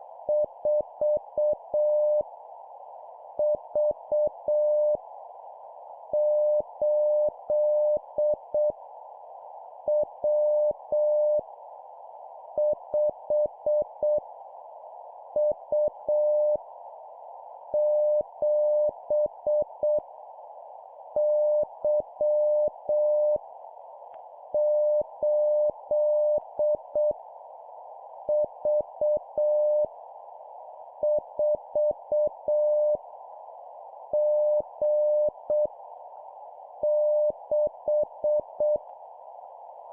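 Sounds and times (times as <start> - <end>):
steady background hiss: 0.0 - 39.9.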